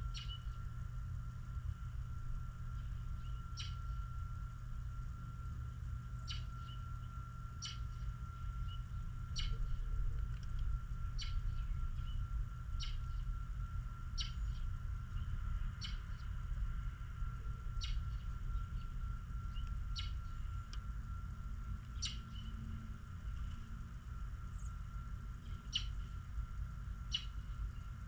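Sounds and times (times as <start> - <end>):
small songbird chirping: 0.0 - 0.6, 2.7 - 4.5, 6.1 - 9.9, 10.8 - 23.5, 24.2 - 28.0
faint constant high tone: 0.0 - 28.0
steady low rumble: 0.0 - 28.0.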